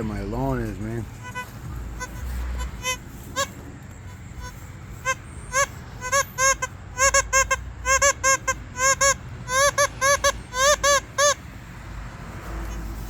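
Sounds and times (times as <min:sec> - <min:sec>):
geese honking: 0:01.1 - 0:11.5.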